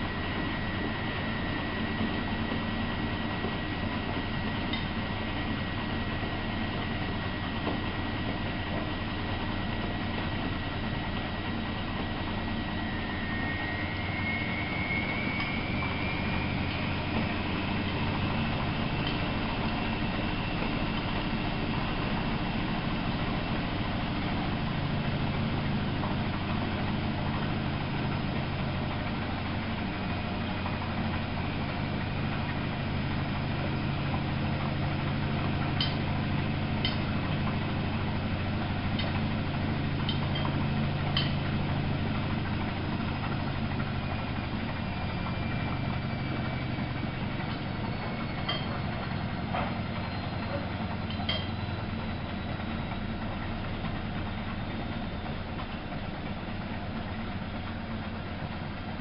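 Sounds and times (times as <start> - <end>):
washing machine motor hum: 0.0 - 59.0.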